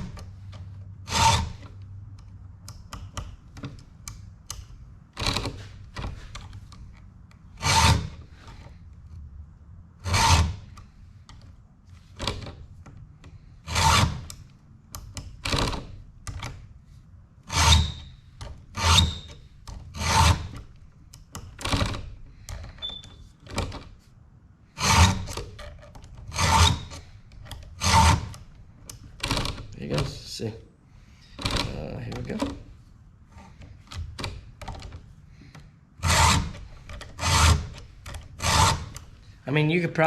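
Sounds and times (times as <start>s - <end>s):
hand file rasping on chain: 1.1s - 1.6s, 20.0s - 20.5s, 36.0s - 37.8s, 38.4s - 39.0s.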